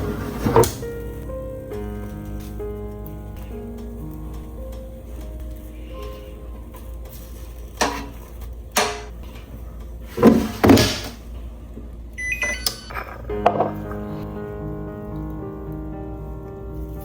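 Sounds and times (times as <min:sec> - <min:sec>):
noisy kitchen handling sounds: 0:00.0 - 0:01.0, 0:03.4 - 0:14.3
soft background music: 0:00.0 - 0:08.9, 0:12.2 - 0:17.0.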